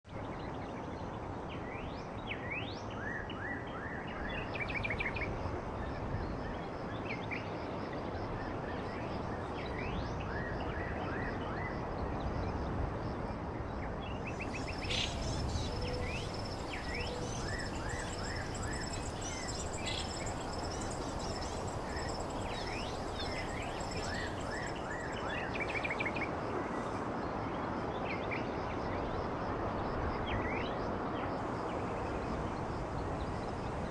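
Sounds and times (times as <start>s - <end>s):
small birds chirping: 14.3s - 26.0s.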